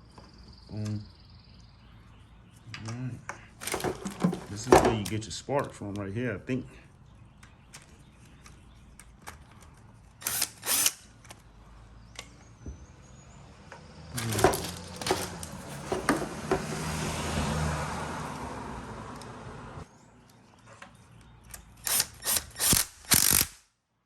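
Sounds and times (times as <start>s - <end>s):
hand tools clicking and knocking: 2.7s - 5.3s, 14.2s - 17.1s.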